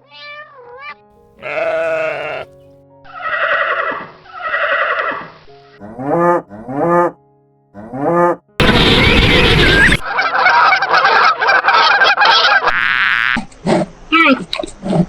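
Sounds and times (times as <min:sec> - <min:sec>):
honking animal calls: 0:01.4 - 0:07.2, 0:07.8 - 0:13.5
loud rushing noise: 0:08.6 - 0:10.0
chatter of many animal calls: 0:08.6 - 0:13.9.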